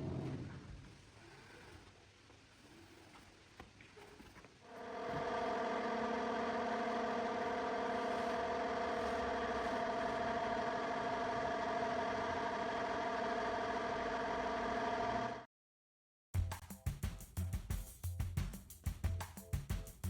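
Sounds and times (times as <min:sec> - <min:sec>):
machine motor humming: 0:04.7 - 0:15.4.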